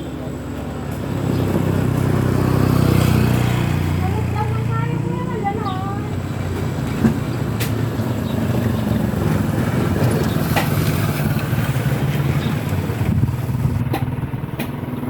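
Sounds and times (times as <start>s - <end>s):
engine humming: 0.0s - 15.0s
sharp clicks: 13.8s - 14.8s.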